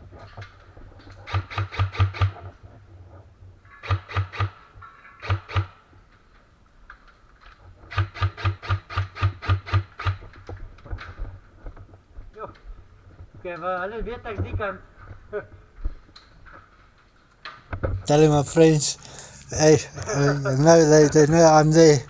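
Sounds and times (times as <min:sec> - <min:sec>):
airsoft rifle firing bursts: 0:01.2 - 0:02.5, 0:03.7 - 0:05.8, 0:07.9 - 0:10.2.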